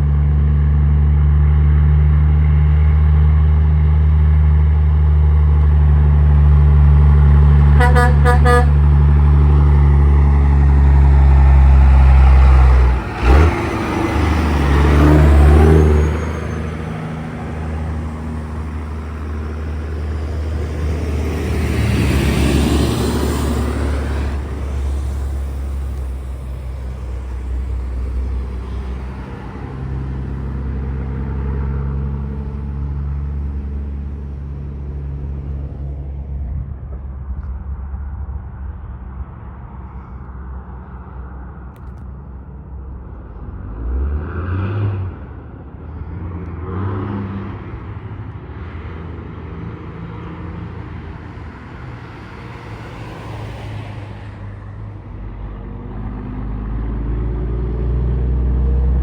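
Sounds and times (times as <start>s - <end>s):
low engine drone: 0.0s - 46.6s
vehicle accelerating past: 6.2s - 35.8s, 43.6s - 45.4s.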